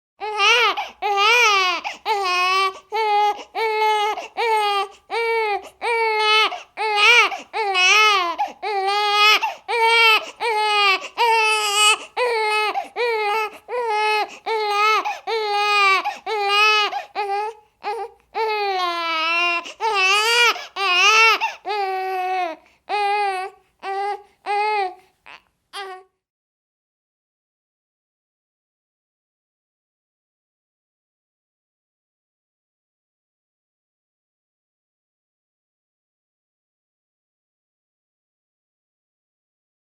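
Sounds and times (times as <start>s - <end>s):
baby crying: 0.2s - 26.2s.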